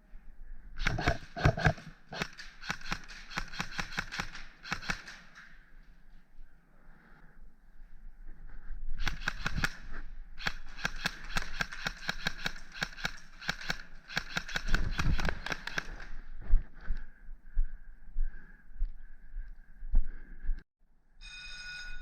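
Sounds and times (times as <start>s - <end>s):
airsoft gun firing rapid shots: 0.8s - 5.4s, 9.0s - 16.1s.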